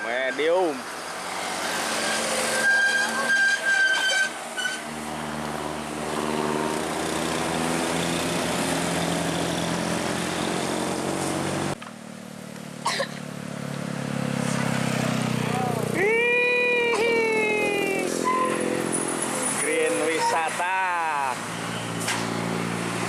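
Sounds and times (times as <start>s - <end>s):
bus engine hum: 0.0s - 23.0s
bus horn: 18.2s - 18.8s, 19.6s - 20.7s.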